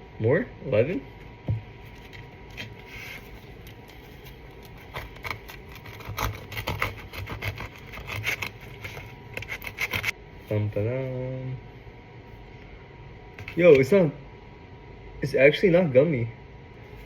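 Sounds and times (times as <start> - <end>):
crust crackling: 1.8 - 10.6
bread knife sawing through loaf: 4.8 - 10.1.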